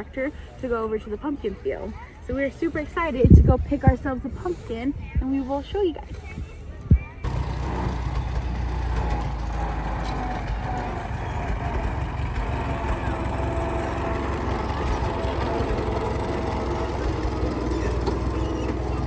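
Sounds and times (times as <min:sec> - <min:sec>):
tractor engine running: 0:07.2 - 0:19.0.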